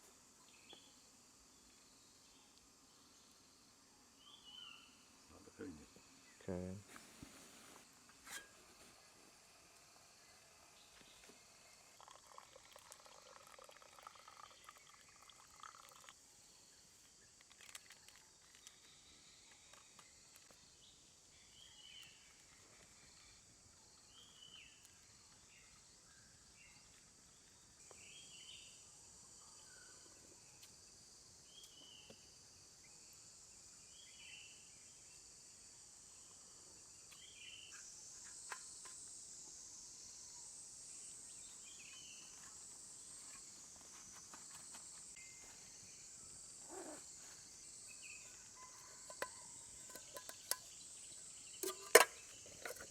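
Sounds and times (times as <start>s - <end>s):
insects trilling: 0.0s - 52.9s.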